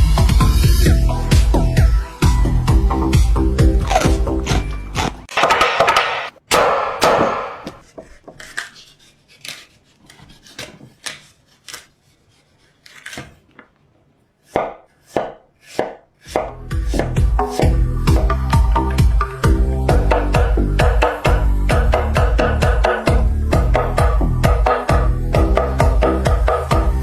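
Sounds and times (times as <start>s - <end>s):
background music: 0.0s - 5.3s, 16.4s - 27.0s
knife chopping on cutting board: 14.4s - 18.3s.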